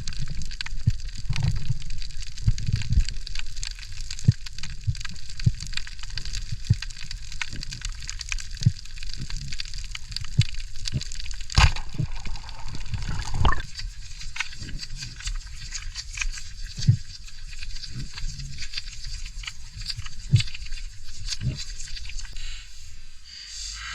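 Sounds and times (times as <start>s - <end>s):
bubbling: 0.0s - 22.4s
underwater fine crackle: 0.0s - 23.3s
low knocks underwater: 11.6s - 13.6s.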